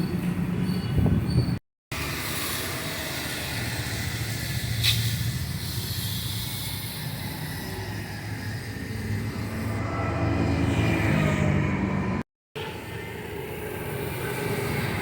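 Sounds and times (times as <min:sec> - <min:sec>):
high-pressure water spray hissing: 0:02.0 - 0:09.7.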